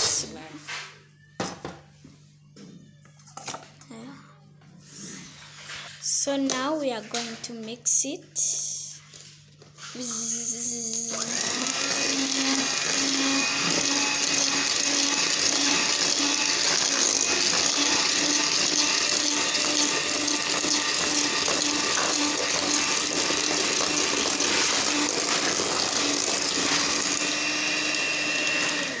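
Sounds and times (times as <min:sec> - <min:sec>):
electric mixer running: 0:10.0 - 0:29.0.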